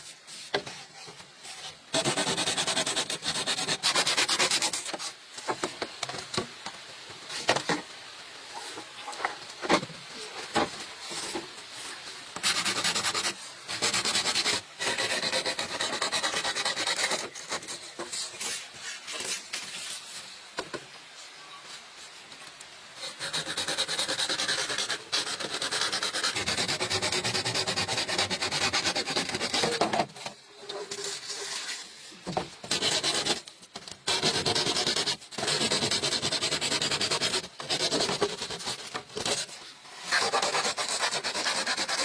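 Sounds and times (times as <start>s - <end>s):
hand tool rasping bamboo: 1.9s - 5.1s, 12.4s - 18.6s, 23.0s - 30.1s, 32.6s - 42.0s.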